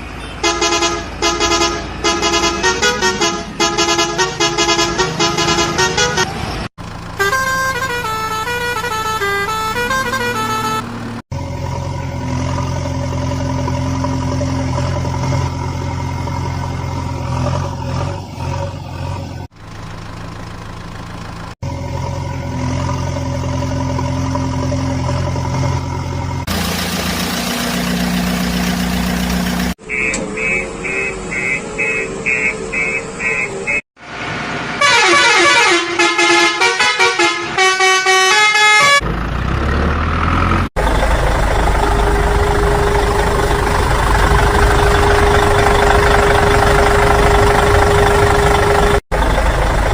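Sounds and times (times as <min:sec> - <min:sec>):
hissing horn blast: 0:00.4 - 0:06.5, 0:07.2 - 0:10.9, 0:34.8 - 0:39.0
short beeping tune: 0:29.9 - 0:33.8.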